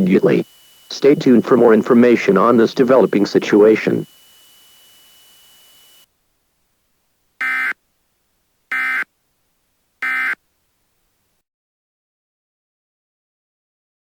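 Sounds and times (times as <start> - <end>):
warbling two-tone data bursts: 0.0 - 6.1.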